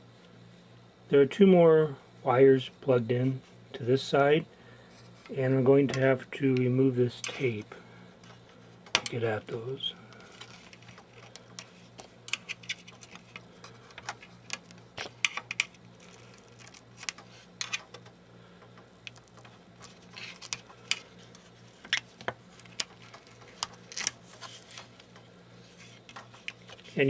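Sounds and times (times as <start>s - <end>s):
steady low hum: 0.0s - 27.0s
adhesive tape peeling: 19.1s - 25.0s.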